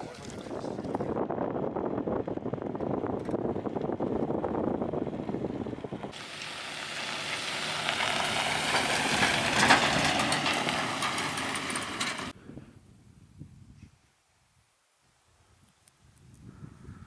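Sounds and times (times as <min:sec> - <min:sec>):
vehicle on rough track: 0:00.0 - 0:12.4.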